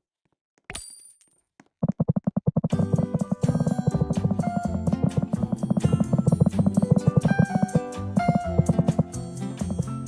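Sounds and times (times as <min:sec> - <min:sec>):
fast pulsing repeated note: 0:02.2 - 0:09.9.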